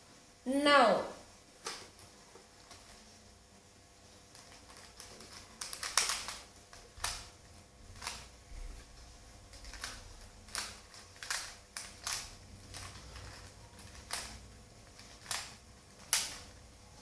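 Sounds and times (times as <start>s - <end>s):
plastic puzzle cube clicks: 4.3s - 7.3s, 9.5s - 16.5s.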